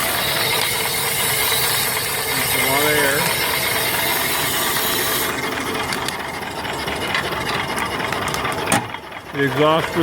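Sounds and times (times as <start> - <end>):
loud steam hiss: 0.0 - 5.6
steam engine clattering: 0.0 - 10.0.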